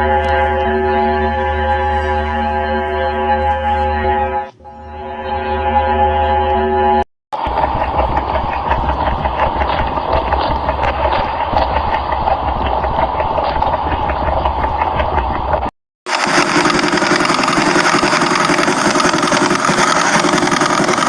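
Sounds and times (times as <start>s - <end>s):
droning tone with harmonics: 0.0s - 15.6s.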